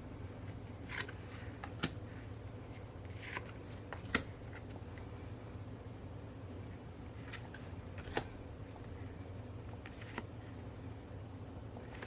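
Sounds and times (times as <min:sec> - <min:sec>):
steady low hum: 0:00.0 - 0:12.0
cards and packaging handled: 0:00.4 - 0:05.0, 0:06.8 - 0:10.6, 0:11.7 - 0:12.0.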